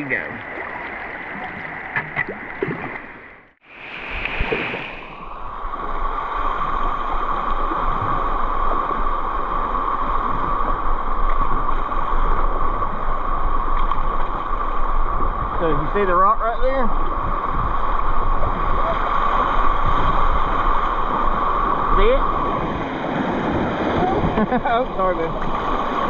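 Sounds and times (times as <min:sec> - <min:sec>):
river water rushing: 0:16.9 - 0:26.0.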